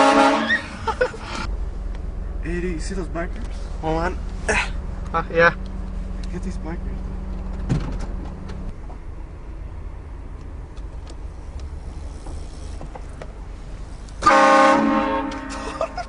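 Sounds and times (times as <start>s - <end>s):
train horn blast: 0.0s - 0.8s, 14.2s - 15.9s
low vehicle rumble: 0.0s - 16.0s.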